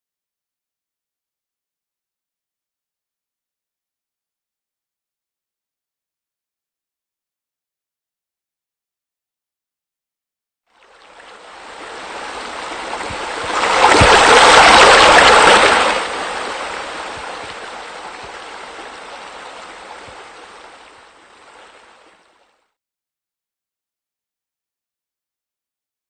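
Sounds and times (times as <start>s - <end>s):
waterfall rushing and splashing: 11.2s - 22.3s.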